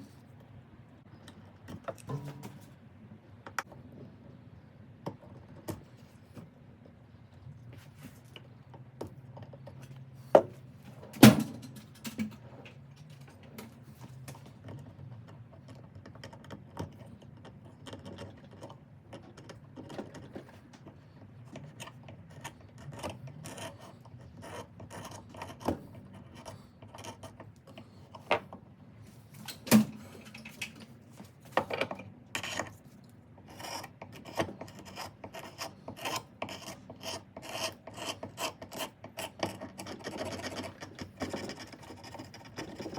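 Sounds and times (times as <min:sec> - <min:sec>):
rasping scraping strokes: 0:33.5 - 0:42.9.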